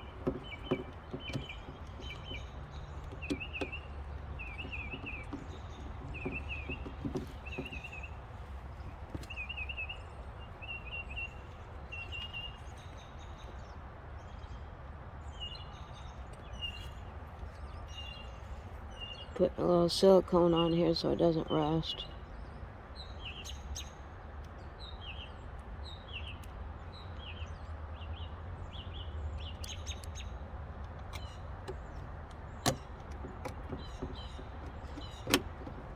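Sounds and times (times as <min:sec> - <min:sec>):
songbird trilling: 0:33.5 - 0:35.9.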